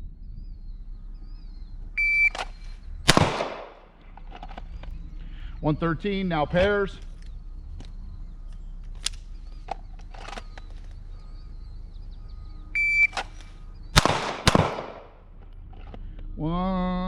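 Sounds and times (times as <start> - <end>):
shot timer beep: 2.0 - 2.5, 12.8 - 13.2
handgun shots echoing: 2.3 - 3.9, 13.0 - 15.2.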